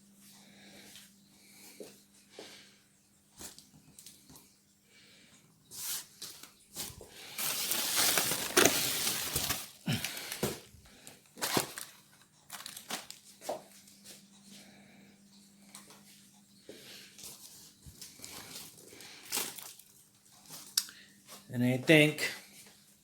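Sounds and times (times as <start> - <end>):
plastic packaging rustling: 5.8 - 14.1, 17.2 - 20.9.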